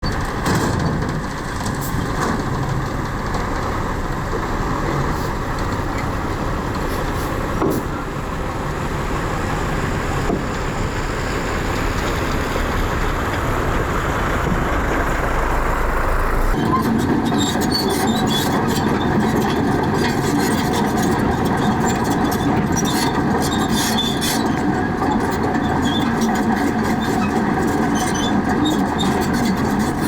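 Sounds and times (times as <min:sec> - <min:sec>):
heavy machinery diesel engines running: 0:00.0 - 0:30.0.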